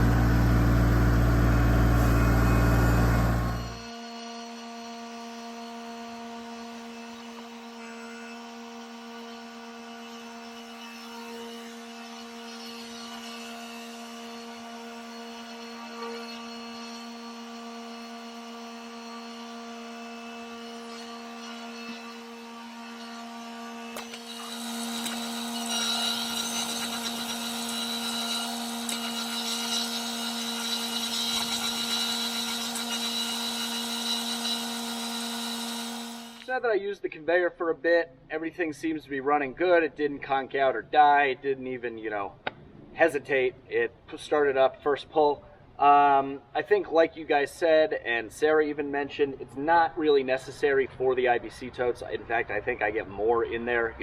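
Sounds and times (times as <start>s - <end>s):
small gasoline engines running: 0.0s - 3.8s
rough mechanical working noise: 0.0s - 7.7s, 12.5s - 36.5s.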